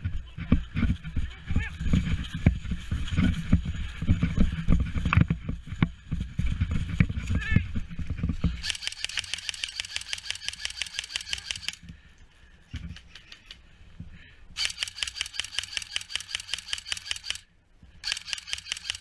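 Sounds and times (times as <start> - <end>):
airsoft gun full auto bursts: 8.6 - 11.8, 14.6 - 19.0.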